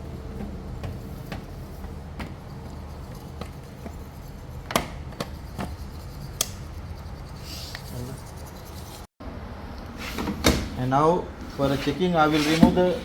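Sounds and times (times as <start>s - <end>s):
low machine hum: 0.0s - 10.0s.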